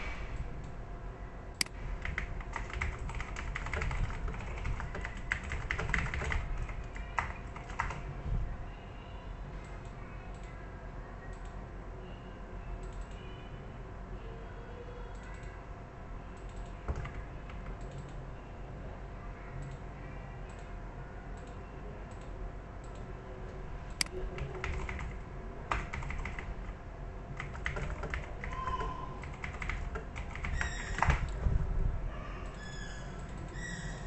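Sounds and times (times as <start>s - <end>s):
low steady hum: 0.0s - 34.0s
keyboard typing: 1.6s - 8.1s, 16.4s - 18.2s, 24.0s - 26.8s, 27.4s - 31.5s.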